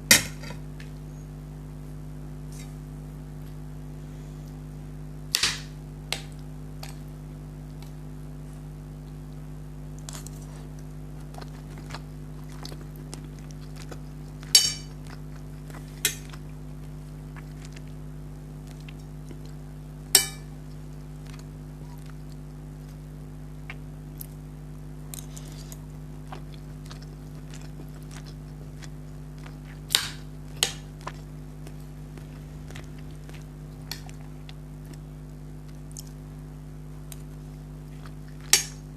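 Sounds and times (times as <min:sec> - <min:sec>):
steady low hum: 0:00.0 - 0:38.9
small clicks of eating: 0:06.1 - 0:08.0, 0:09.0 - 0:19.7, 0:20.4 - 0:24.4, 0:25.1 - 0:36.2, 0:37.0 - 0:38.9.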